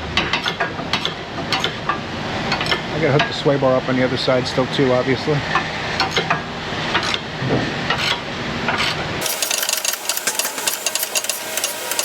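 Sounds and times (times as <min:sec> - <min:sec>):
tools clanking: 0:08.8 - 0:12.0
wrench clicking rapidly: 0:09.2 - 0:12.0.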